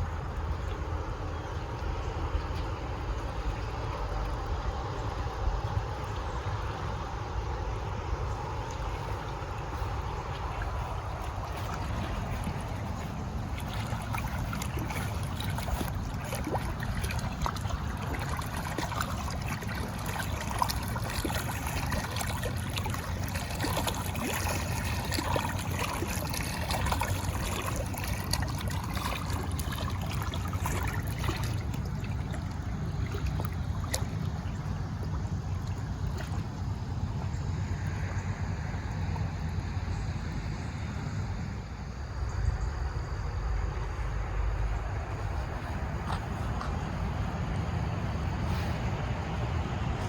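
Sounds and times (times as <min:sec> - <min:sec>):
running water rushing: 0:00.0 - 0:39.7
constant low rumble: 0:00.0 - 0:50.0.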